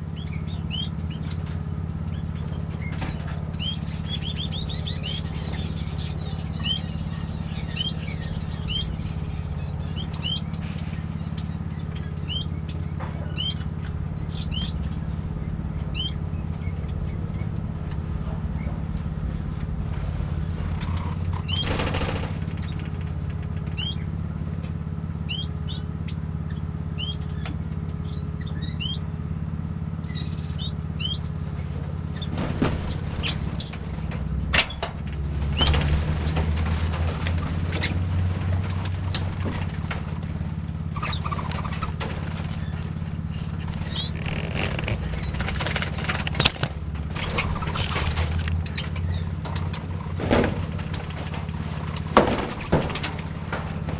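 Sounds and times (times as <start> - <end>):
small birds chirping: 0.0 - 29.2, 29.9 - 53.9
steady low hum: 0.0 - 53.9
rustling: 32.2 - 53.9.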